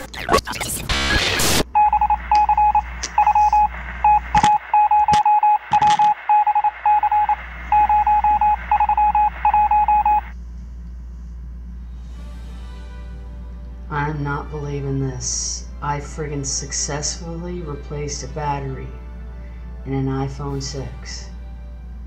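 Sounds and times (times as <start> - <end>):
short telephone beeps: 1.8 - 10.3.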